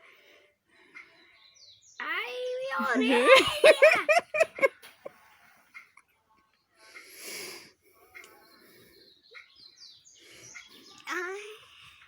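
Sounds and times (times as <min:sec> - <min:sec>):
child laughing: 0:02.8 - 0:04.7.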